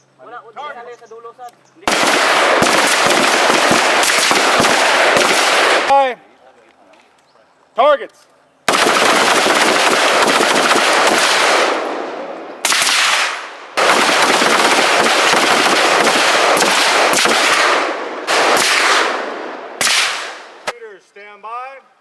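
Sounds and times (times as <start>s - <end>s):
rapid overlapping gunshots: 1.8s - 5.9s, 8.7s - 20.7s.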